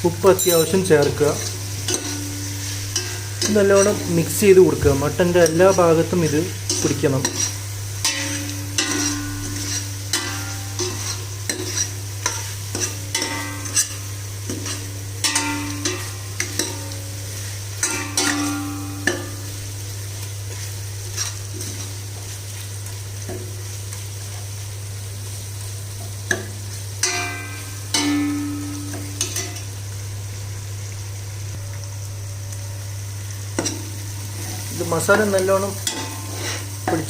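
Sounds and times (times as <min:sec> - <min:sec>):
faint sizzle: 0:00.0 - 0:37.0
steady low hum: 0:00.0 - 0:37.0
spoon clinking and scraping pan: 0:00.3 - 0:04.4, 0:05.4 - 0:17.0, 0:17.8 - 0:19.4, 0:26.3 - 0:29.7, 0:35.8 - 0:37.0.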